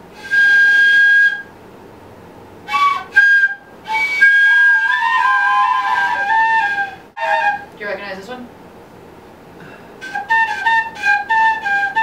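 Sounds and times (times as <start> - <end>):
flute-like wind instruments playing: 0.1 - 1.5, 2.7 - 7.7, 10.0 - 12.0.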